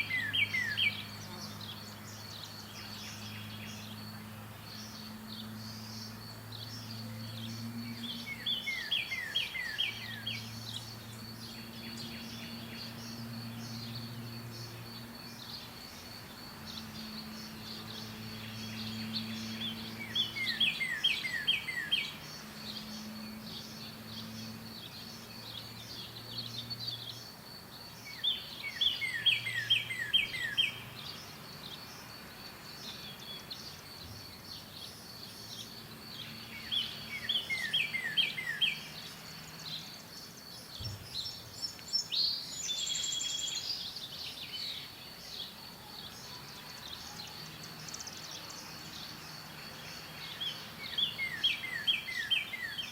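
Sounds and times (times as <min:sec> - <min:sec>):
songbirds singing: 0:00.0 - 0:52.9.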